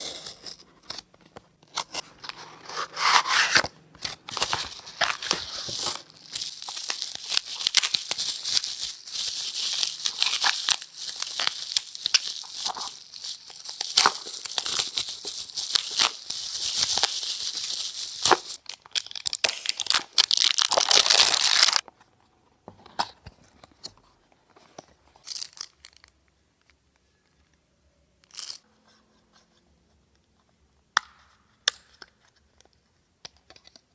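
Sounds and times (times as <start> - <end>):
cardboard and plastic wrap tearing: 1.9 - 21.8.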